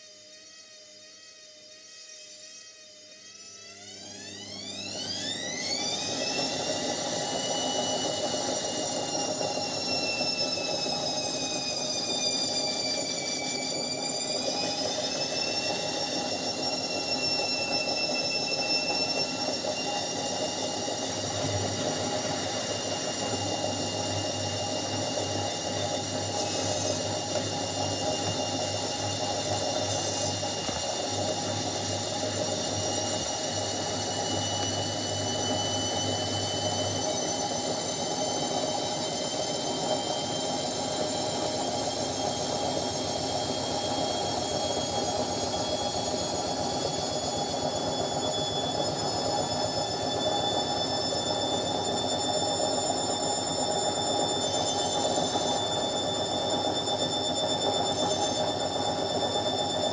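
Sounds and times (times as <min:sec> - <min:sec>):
washing machine running: 0:03.6 - 0:59.9
high motor whine: 0:11.9 - 0:59.9.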